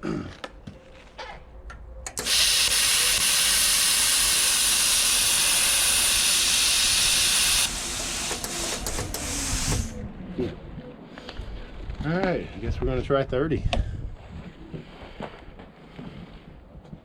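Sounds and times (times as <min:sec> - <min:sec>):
plasma cutter arc hissing: 0:02.1 - 0:10.0
compressed air hissing: 0:02.2 - 0:10.0.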